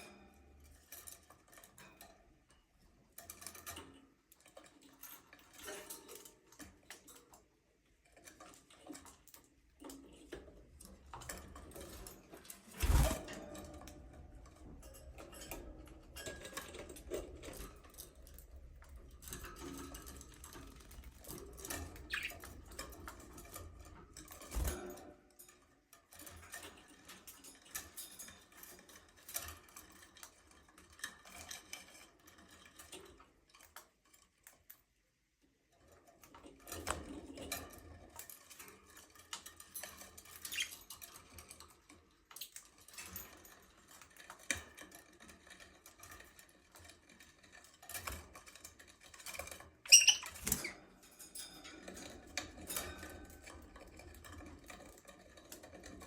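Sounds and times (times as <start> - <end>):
small clicks and scratching: 0.6 - 35.0, 35.7 - 56.0
budgerigars chirping: 22.1 - 22.4, 49.9 - 50.3.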